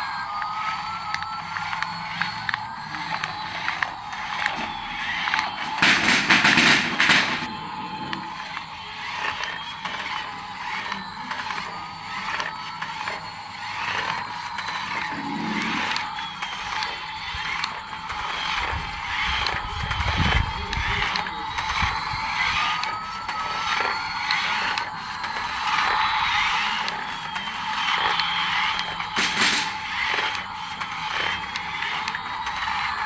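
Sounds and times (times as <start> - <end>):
faint whine: 0.0 - 17.6
toy motor and gears whirring: 0.0 - 33.0.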